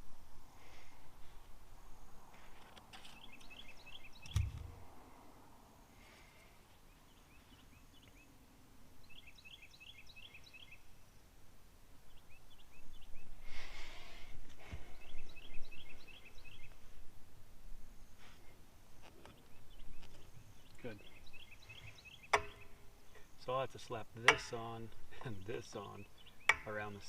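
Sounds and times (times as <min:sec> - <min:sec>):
rustle: 0:00.0 - 0:23.9
outdoor background noise: 0:00.0 - 0:27.0
bird chirping: 0:03.0 - 0:04.8, 0:06.8 - 0:08.4, 0:09.0 - 0:11.2, 0:12.0 - 0:13.4, 0:14.8 - 0:16.8, 0:19.2 - 0:23.6, 0:24.2 - 0:27.0
sharp click: 0:04.2 - 0:04.7.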